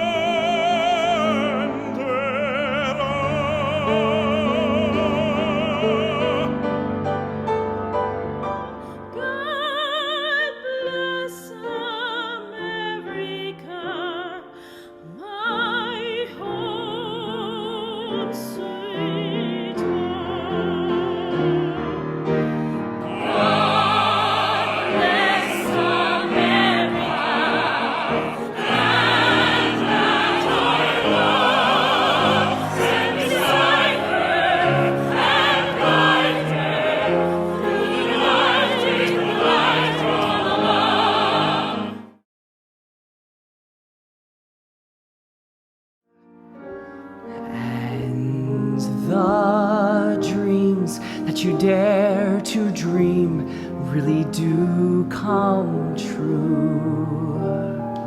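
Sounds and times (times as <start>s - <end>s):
operatic singing with vibrato: 0.0s - 6.7s, 15.0s - 42.2s
instrumental accompaniment: 19.4s - 42.2s.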